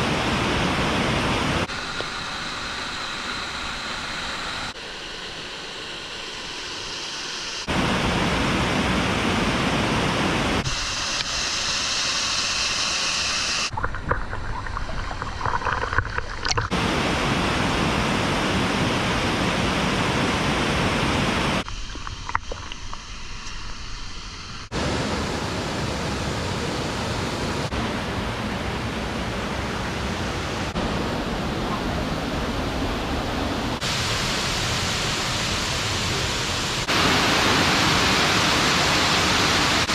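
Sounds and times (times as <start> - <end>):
waterfall rushing: 24.7 - 39.9.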